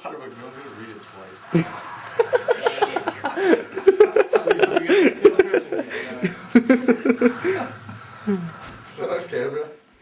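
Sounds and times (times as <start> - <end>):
people laughing hard: 1.5 - 8.4.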